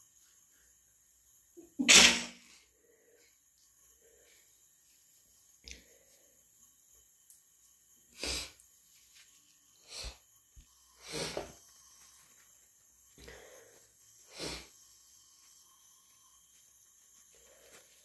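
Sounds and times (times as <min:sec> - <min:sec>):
person sneezing: 0:01.8 - 0:02.4.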